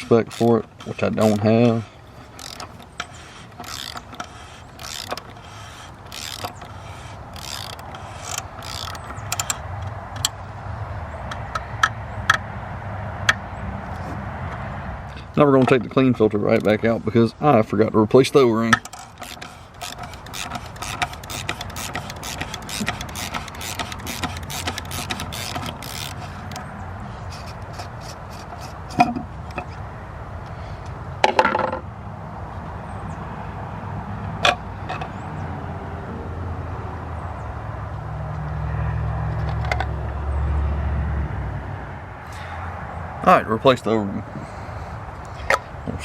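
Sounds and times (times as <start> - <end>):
rapid clicking: 0.0 - 10.6, 18.4 - 26.7
knocks and plastic clatter: 27.4 - 29.8, 31.2 - 31.8.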